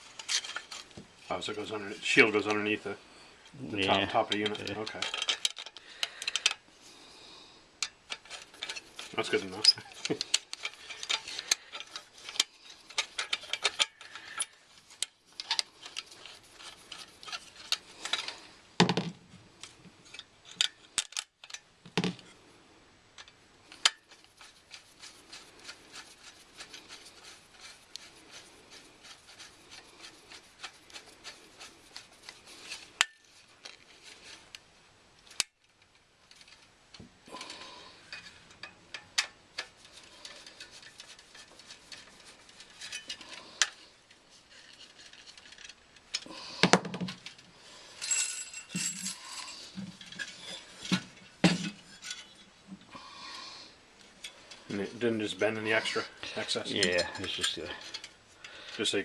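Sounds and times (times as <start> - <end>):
metal clicks and clinks: 4.3 - 6.6, 48.0 - 50.4.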